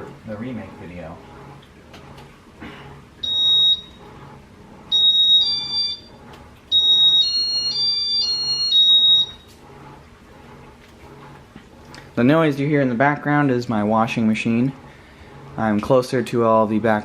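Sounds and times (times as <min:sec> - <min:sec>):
electronic control beeps: 0:03.2 - 0:04.1, 0:04.9 - 0:09.5.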